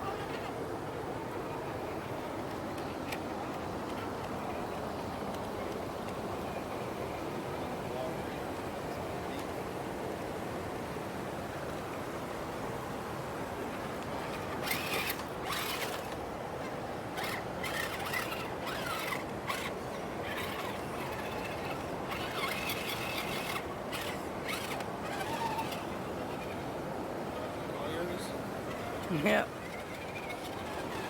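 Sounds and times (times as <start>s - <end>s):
electric motor and gears whining: 13.9s - 31.0s
tyres scraping over rock: 14.2s - 26.6s.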